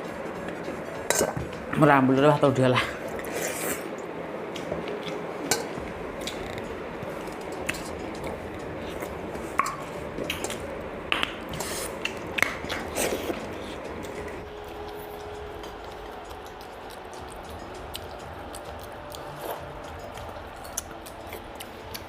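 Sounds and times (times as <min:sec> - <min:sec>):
dishes clinking: 0:01.0 - 0:01.6.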